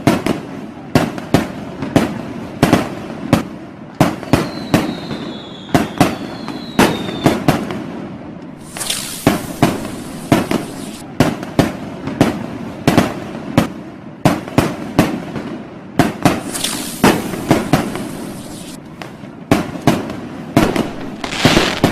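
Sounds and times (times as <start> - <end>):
firecrackers banging: 0.0 - 21.9
firework whistle: 4.0 - 7.7, 8.6 - 11.0, 16.3 - 18.9, 20.7 - 21.9
firework crackling hiss: 8.5 - 11.3, 16.0 - 18.8, 19.9 - 21.9.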